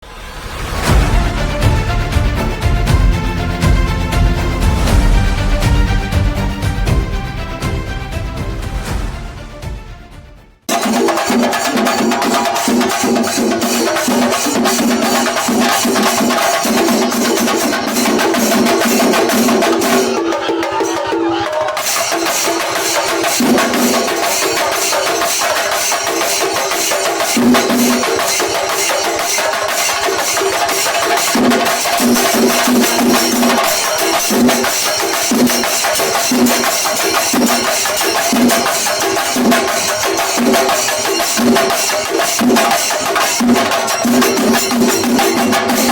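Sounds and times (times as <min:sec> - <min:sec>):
drums beaten fast: 0:00.5 - 0:10.1, 0:10.7 - 0:45.9
cymbals: 0:10.7 - 0:45.9.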